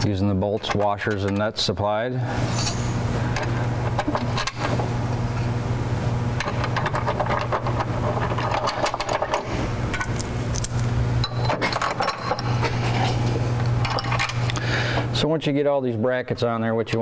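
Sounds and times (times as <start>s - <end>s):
motor humming: 2.3s - 15.2s
metal bolts clinking: 3.4s - 4.9s, 6.4s - 14.6s.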